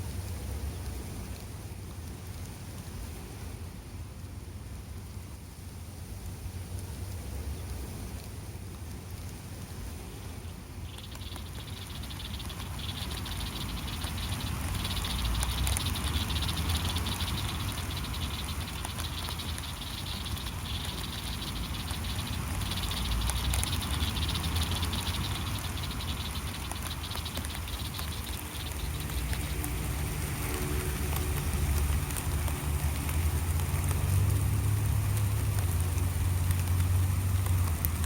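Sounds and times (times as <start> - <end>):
light rain pattering: 0.0 - 38.0
frogs trilling: 10.7 - 38.0
vehicle engine humming: 10.8 - 38.0.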